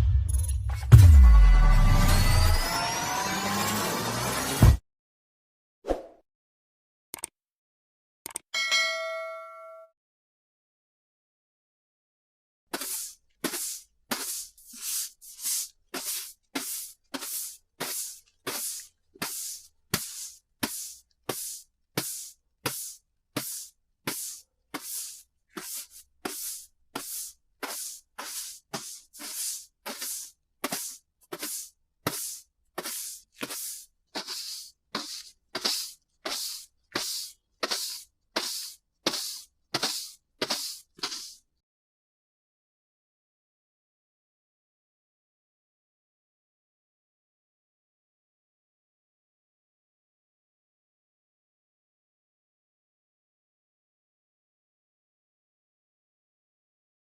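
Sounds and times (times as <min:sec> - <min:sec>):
broom sweeping hard floor: 0:12.7 - 0:41.5.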